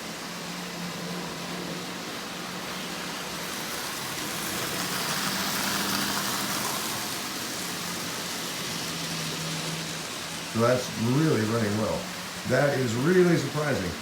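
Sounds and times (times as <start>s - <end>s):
toy train whirring rattle: 0.0s - 14.0s.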